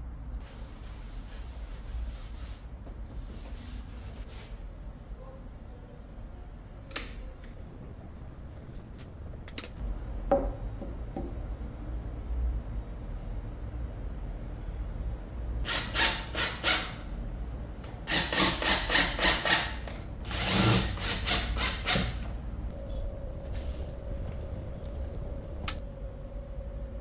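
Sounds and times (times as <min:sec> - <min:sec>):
sandpaper rubbing wood: 0:00.4 - 0:04.6
faint steady hum: 0:22.2 - 0:27.0.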